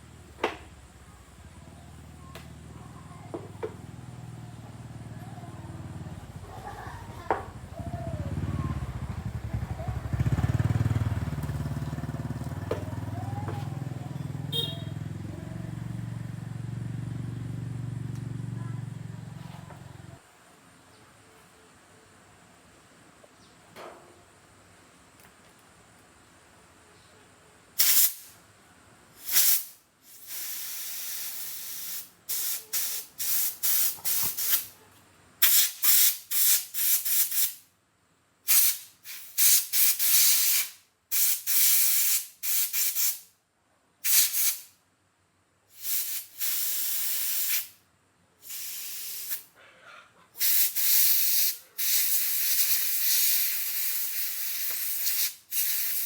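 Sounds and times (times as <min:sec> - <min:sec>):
compressed air hissing from air gun: 0:27.8 - 0:28.4, 0:29.2 - 0:34.7, 0:35.4 - 0:37.6, 0:38.5 - 0:43.3, 0:44.0 - 0:44.7, 0:45.7 - 0:47.8, 0:48.4 - 0:49.5, 0:50.4 - 0:56.0.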